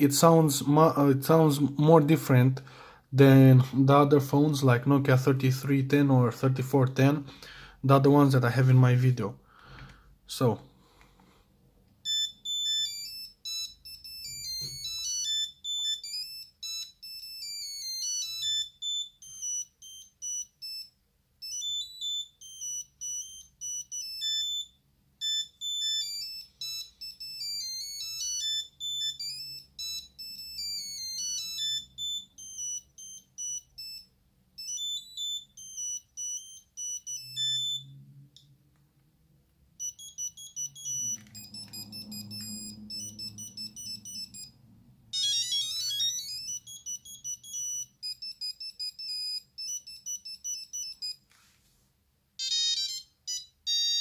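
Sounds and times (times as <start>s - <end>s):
mobile phone ringtone: 12.0s - 38.2s, 39.7s - 51.3s, 52.4s - 54.0s.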